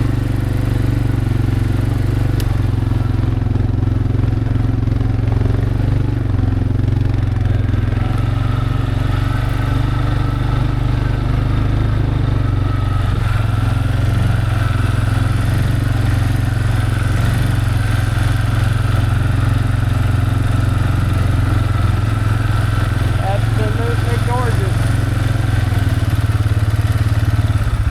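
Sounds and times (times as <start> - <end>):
engine running steadily: 0.0 - 27.9.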